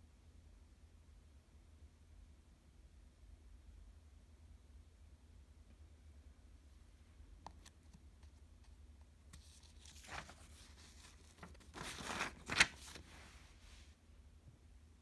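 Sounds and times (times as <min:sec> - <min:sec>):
rustling crinkling handling noise: 0:09.3 - 0:13.9.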